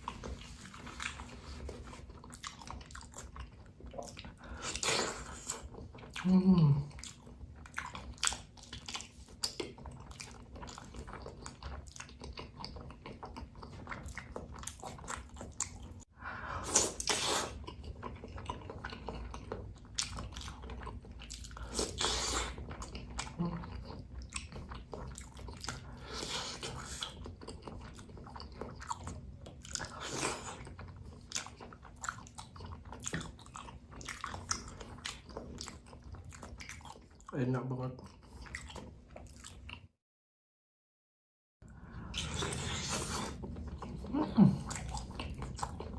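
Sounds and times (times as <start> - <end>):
person biting and chewing: 42.0 - 44.0.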